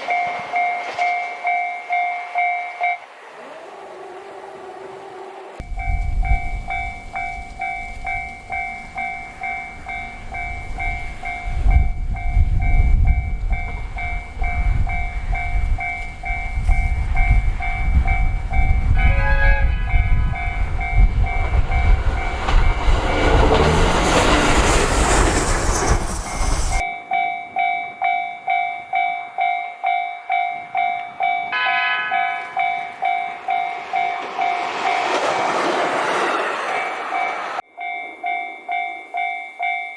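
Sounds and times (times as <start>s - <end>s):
train rumbling past: 0.0s - 26.9s, 30.6s - 39.3s
level crossing bell ringing: 26.9s - 34.8s.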